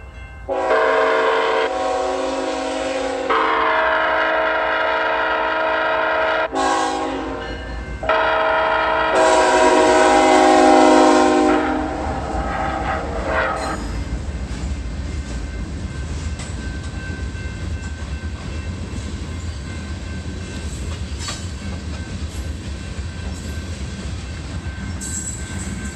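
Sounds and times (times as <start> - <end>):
passing train rumbling: 0.0 - 25.9
train horn blasts: 0.5 - 13.9
wheels clicking over rail joints: 17.8 - 25.9.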